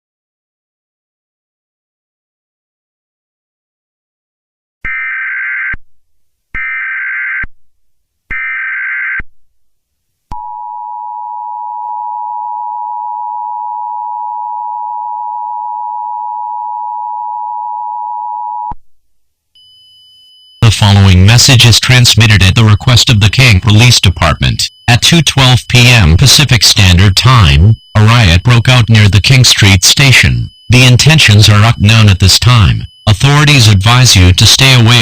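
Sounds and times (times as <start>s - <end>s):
two-tone attention signal: 19.6s - 35.0s
screeching data bursts: 20.6s - 35.0s.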